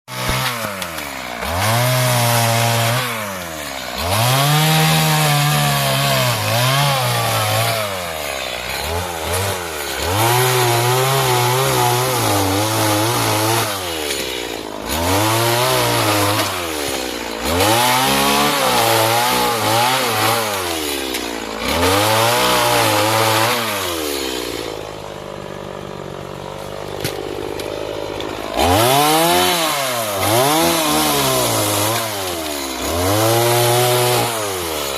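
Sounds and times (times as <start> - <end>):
chainsaw cutting wood: 0.1 - 34.9.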